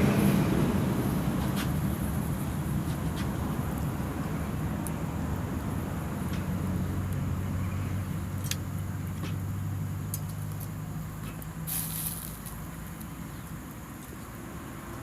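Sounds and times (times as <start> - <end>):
steady low hum: 0.0 - 14.4
wood fire crackling and popping: 0.0 - 15.0
brief hiss: 11.7 - 12.6.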